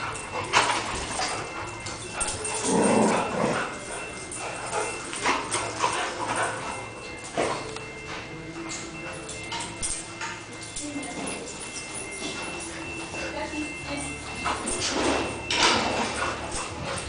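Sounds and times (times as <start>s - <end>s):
dogs barking: 0.0s - 8.3s, 14.4s - 17.0s
dogs whining: 0.0s - 17.0s.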